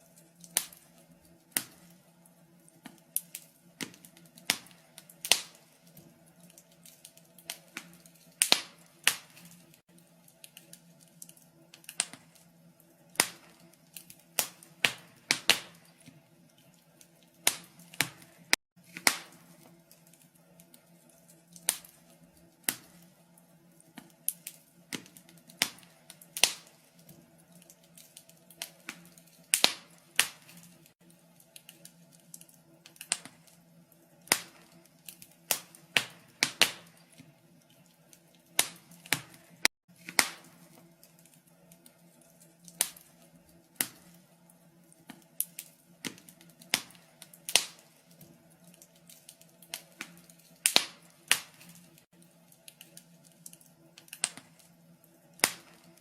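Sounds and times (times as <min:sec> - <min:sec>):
wood fire crackling: 0:00.0 - 0:56.0.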